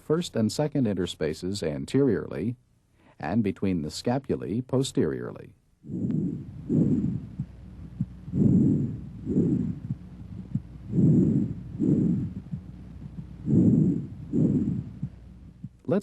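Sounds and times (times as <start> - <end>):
breath sounds through stethoscope: 5.9 - 15.8.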